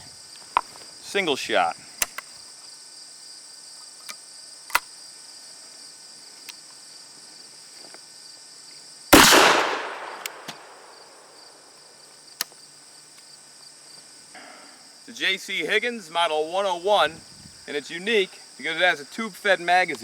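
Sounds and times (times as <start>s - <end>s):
insects chirring: 0.0s - 20.0s
shotgun shot: 9.2s - 11.2s
short sharp clicks: 10.0s - 10.6s.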